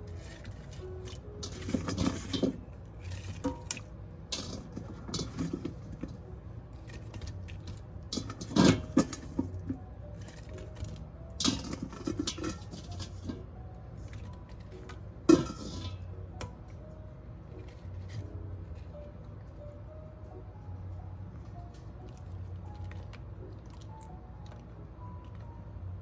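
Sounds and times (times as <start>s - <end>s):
handling noises: 0.0s - 16.8s
low steady hum: 0.0s - 26.0s.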